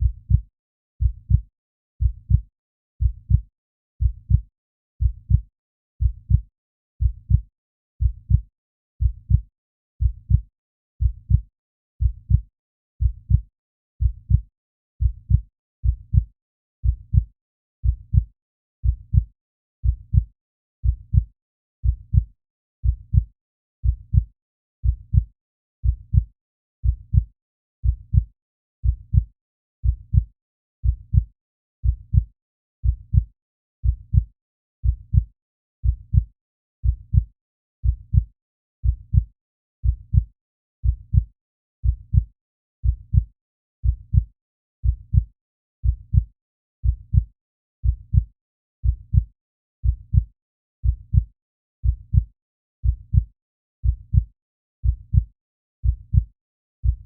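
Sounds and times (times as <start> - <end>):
heartbeat double thump: 29.8 - 30.2, 31.8 - 32.2, 32.8 - 33.2, 33.8 - 34.2, 34.8 - 35.2, 35.8 - 36.2, 36.8 - 37.2, 37.8 - 38.2, 38.8 - 39.2, 39.8 - 40.2, 40.8 - 41.2, 41.8 - 42.2, 42.8 - 43.2, 43.8 - 44.2, 44.8 - 45.2, 45.8 - 46.2, 46.8 - 47.2, 47.8 - 48.2, 48.8 - 49.2, 49.8 - 50.2, 50.8 - 51.2, 51.8 - 52.2, 52.8 - 53.2, 53.8 - 54.2, 54.8 - 55.2, 55.8 - 56.2.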